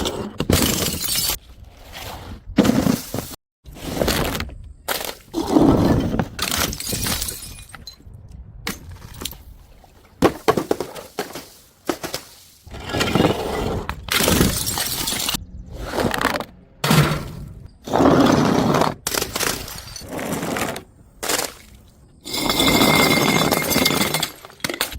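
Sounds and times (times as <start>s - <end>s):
glass bottles smashing: 0.5s - 1.4s, 6.4s - 8.0s, 14.1s - 15.4s, 19.1s - 20.1s, 22.2s - 24.9s
glass shards tinkling: 19.4s - 20.1s.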